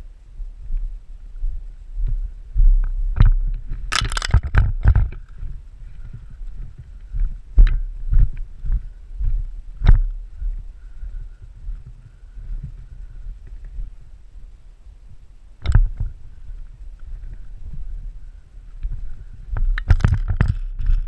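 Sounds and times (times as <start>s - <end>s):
camera thumps and rubbing: 3.2s - 5.2s, 19.8s - 21.0s
sharp clicks: 3.9s - 5.3s.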